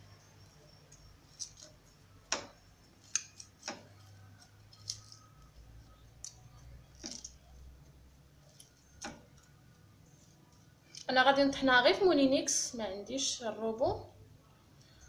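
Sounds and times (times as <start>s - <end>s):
faint low hum: 0.0s - 15.0s
hands peeling an onion: 0.4s - 7.4s.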